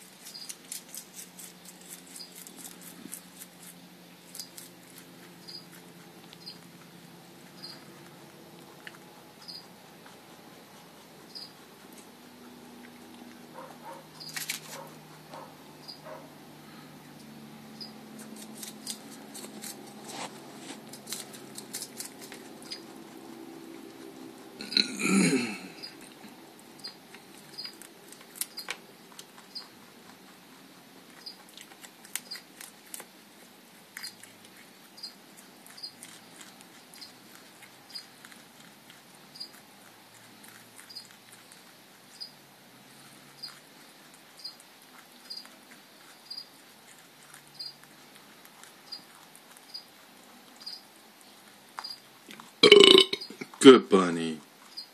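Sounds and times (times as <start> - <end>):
rabbit crunching salad: 0.0 - 54.9
faint high chirp: 5.4 - 5.8, 7.6 - 7.9
rabbit burp falling in pitch: 24.6 - 25.9, 52.6 - 54.0.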